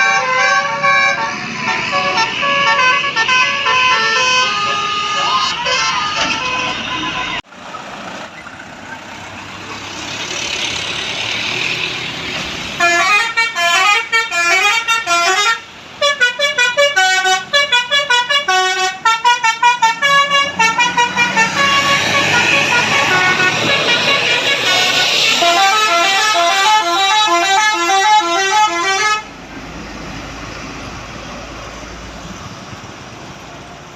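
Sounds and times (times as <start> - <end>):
bus and street noise: 0.0 - 33.9
musical air horn tune: 12.8 - 29.3.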